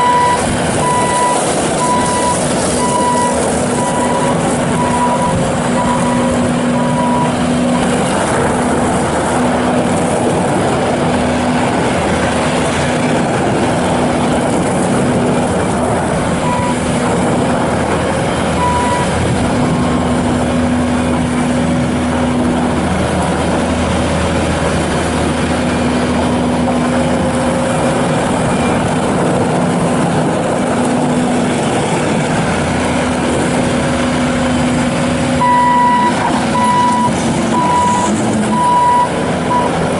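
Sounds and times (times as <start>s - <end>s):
reverse alarm beeping: 0.0s - 7.4s, 16.4s - 16.8s, 18.6s - 19.1s, 35.4s - 39.8s
hydraulic whine: 0.0s - 10.4s, 33.3s - 39.9s
diesel engine running under load: 0.0s - 39.9s.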